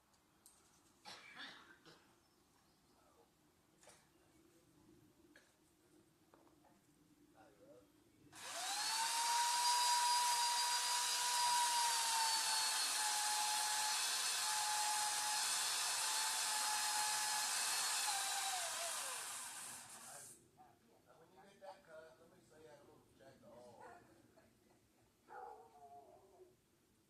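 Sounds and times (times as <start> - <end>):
power tool motor whining: 8.4 - 20.3.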